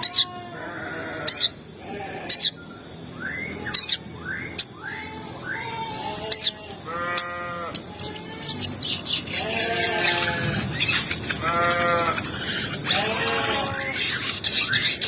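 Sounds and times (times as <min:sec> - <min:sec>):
nasal bleat-like animal calls: 0:00.0 - 0:02.5, 0:05.6 - 0:08.7, 0:09.3 - 0:10.7, 0:11.3 - 0:14.0.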